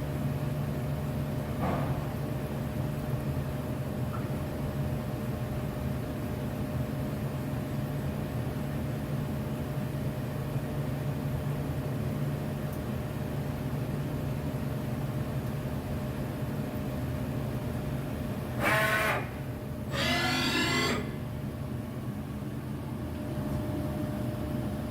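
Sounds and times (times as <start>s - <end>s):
short machine whine: 18.6s - 21.3s.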